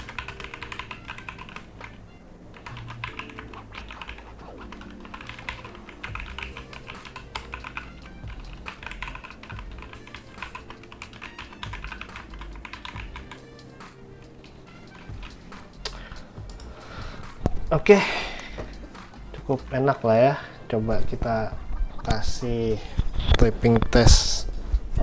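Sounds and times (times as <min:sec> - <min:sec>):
mechanical keyboard typing: 0:00.0 - 0:01.9, 0:02.5 - 0:13.4
quiet background music: 0:00.0 - 0:25.0.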